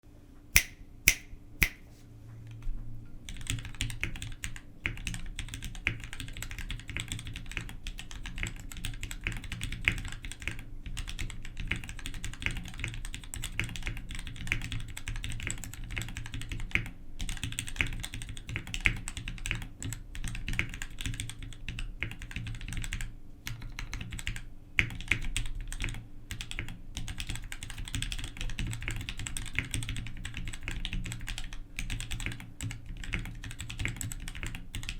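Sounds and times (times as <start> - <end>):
sharp clicks: 0.6 - 1.8
typing on a mechanical keyboard: 3.2 - 34.9.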